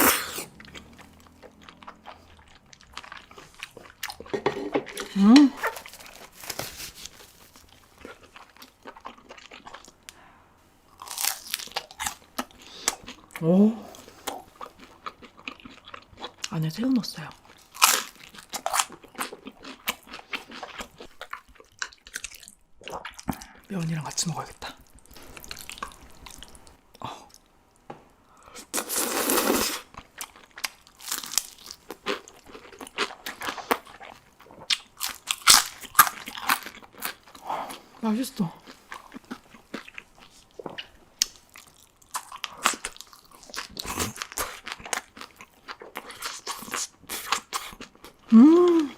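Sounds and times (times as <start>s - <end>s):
close chewing: 0.0s - 10.2s, 11.0s - 27.5s, 29.8s - 48.9s
slurping noodles: 28.7s - 29.9s.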